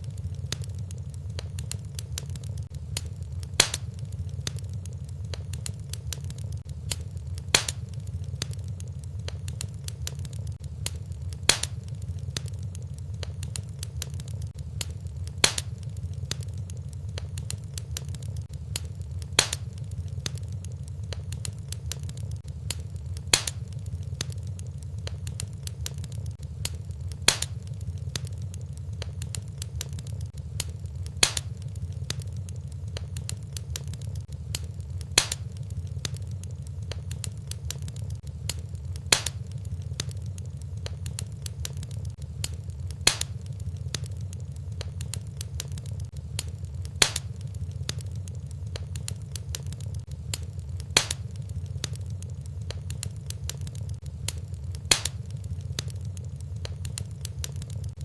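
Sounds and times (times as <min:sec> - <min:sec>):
fire crackling: 0:00.0 - 0:58.0
loud pop from fire: 0:03.6 - 0:04.0, 0:06.9 - 0:07.9, 0:10.9 - 0:11.8, 0:15.4 - 0:15.8, 0:19.3 - 0:19.8, 0:22.7 - 0:23.7, 0:27.3 - 0:27.6, 0:31.2 - 0:31.6, 0:34.6 - 0:35.6, 0:39.1 - 0:39.5, 0:42.4 - 0:43.5, 0:47.0 - 0:48.0, 0:50.9 - 0:51.4, 0:54.3 - 0:55.3.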